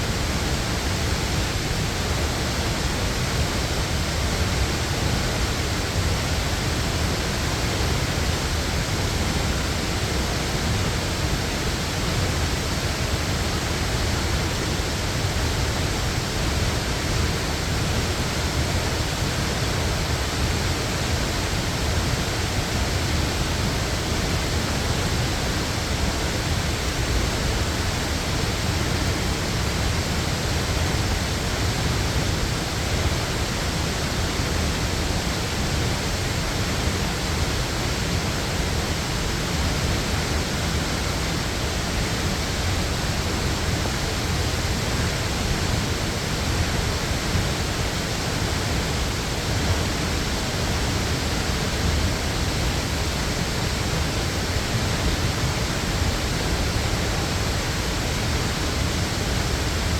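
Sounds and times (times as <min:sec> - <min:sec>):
waterfall roaring: 0:00.0 - 0:59.9.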